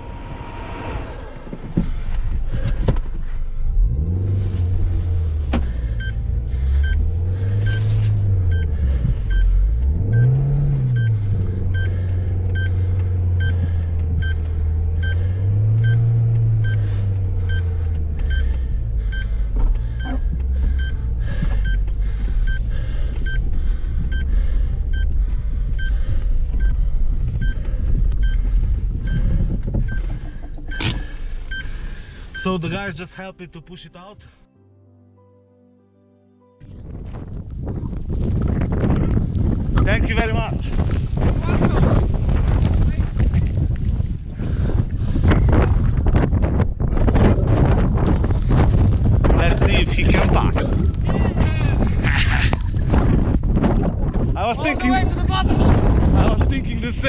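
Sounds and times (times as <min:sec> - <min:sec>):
car engine revving: 0:00.0 - 0:32.9.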